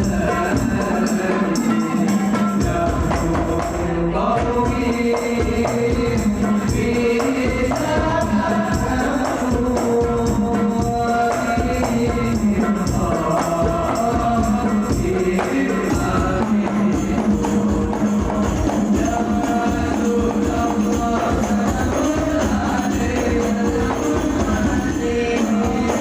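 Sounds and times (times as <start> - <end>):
frame drums with jingles: 0.0 - 26.0
voices singing in unison: 0.0 - 26.0.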